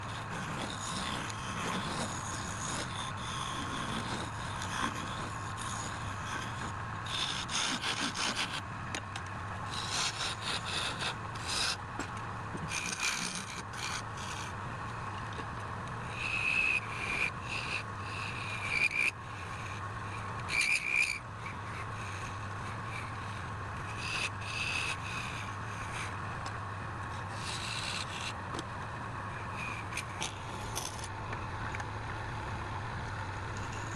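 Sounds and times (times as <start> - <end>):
turning tool scraping wood: 0.0 - 8.6, 9.7 - 14.6, 16.1 - 28.7, 29.3 - 31.1
wood lathe humming: 0.0 - 8.6, 12.6 - 31.8
high tool squeals: 20.5 - 26.1.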